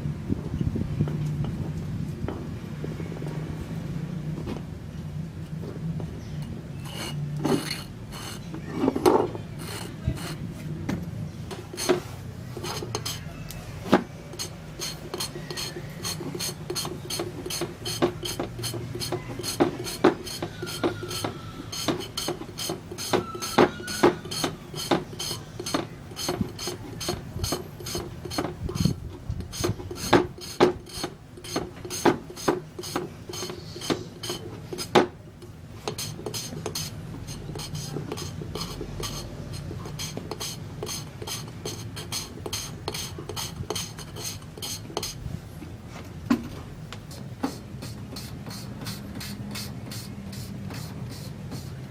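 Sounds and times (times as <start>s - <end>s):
rapid hand scraping strokes: 6.8s - 8.6s, 9.5s - 10.5s, 11.5s - 13.4s, 14.2s - 35.1s, 35.8s - 45.3s, 47.1s - 51.9s.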